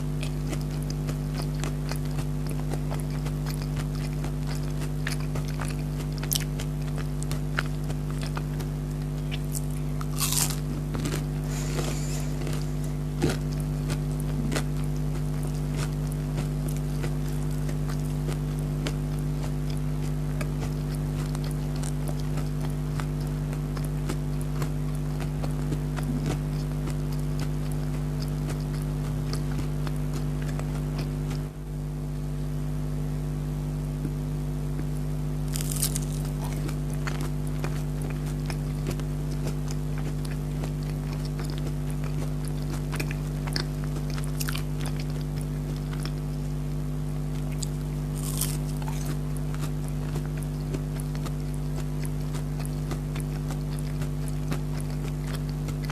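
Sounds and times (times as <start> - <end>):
chewing and biting: 0.0 - 31.5, 35.5 - 55.9
steady low hum: 0.0 - 55.9.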